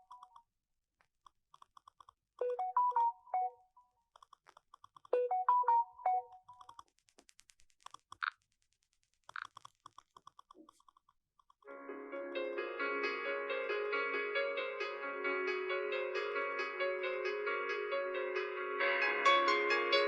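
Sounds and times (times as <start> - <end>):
phone notification jingle: 5.2 - 6.4
soft rapid keyboard taps: 6.5 - 11.6.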